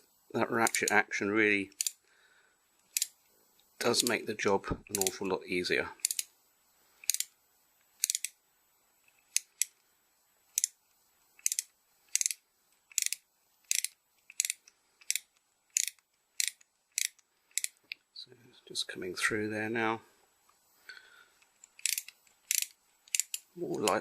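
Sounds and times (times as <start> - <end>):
ratchet tap wrench clicking: 1.7 - 2.0, 6.0 - 6.3, 7.0 - 7.3, 8.0 - 8.4, 11.4 - 17.8, 21.6 - 24.0.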